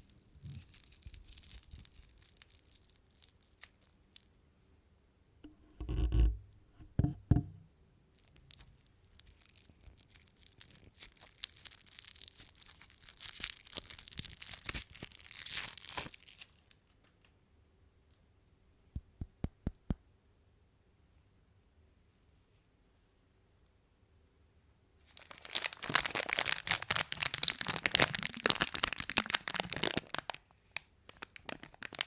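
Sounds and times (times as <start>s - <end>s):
plastic wrapper crinkling: 0.0s - 4.3s, 8.2s - 17.2s, 25.0s - 32.0s
heavy thumps: 5.4s - 7.7s.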